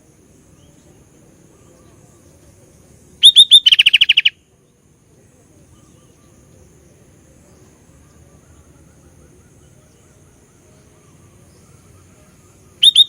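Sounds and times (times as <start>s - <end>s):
bulbul chirps and trill: 3.2s - 4.4s, 12.7s - 13.0s.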